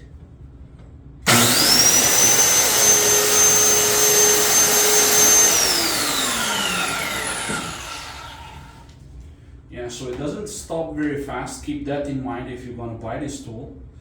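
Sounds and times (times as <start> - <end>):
circular saw whining: 1.3 - 8.9.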